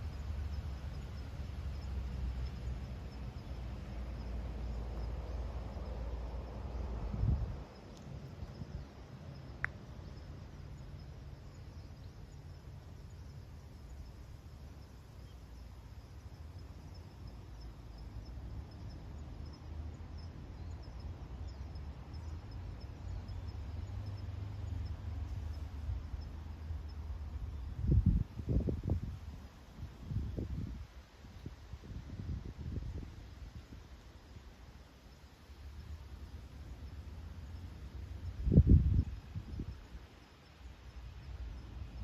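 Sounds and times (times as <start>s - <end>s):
high-pitched insect chirping: 0.0s - 29.1s
wind rumbling on microphone: 3.6s - 10.2s, 27.3s - 34.0s, 38.0s - 40.0s.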